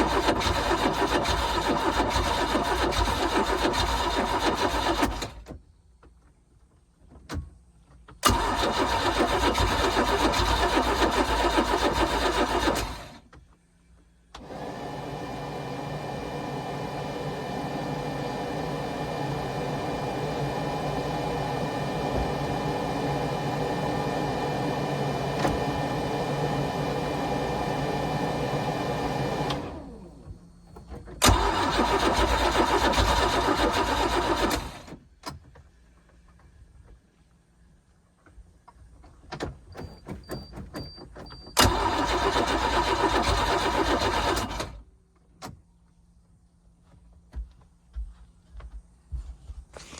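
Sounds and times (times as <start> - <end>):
boat engine starter cranking: 0.0 - 5.5, 8.2 - 13.2, 30.8 - 35.0, 39.8 - 44.8.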